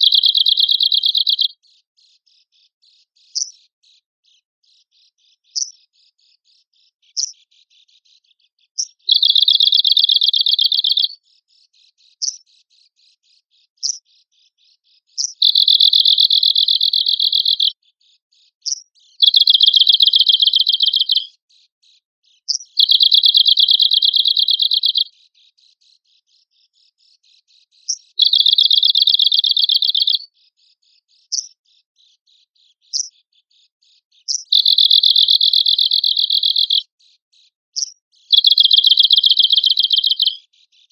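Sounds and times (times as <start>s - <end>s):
bird buzzing trills: 15.2s - 17.7s, 19.2s - 21.3s, 22.5s - 25.1s, 27.9s - 30.2s, 34.3s - 36.8s, 38.3s - 40.4s
sharp bird call notes: 19.2s - 21.3s, 38.3s - 40.4s.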